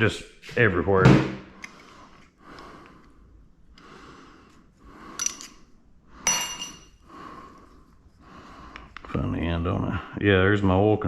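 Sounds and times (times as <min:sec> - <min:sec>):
metal parts clinking and scraping: 0:05.2 - 0:05.6.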